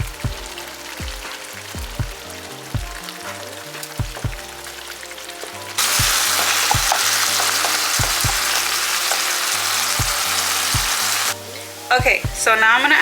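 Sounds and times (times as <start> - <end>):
background music with beat: 0.0 - 13.0
meat sizzling in a pan: 0.0 - 13.0.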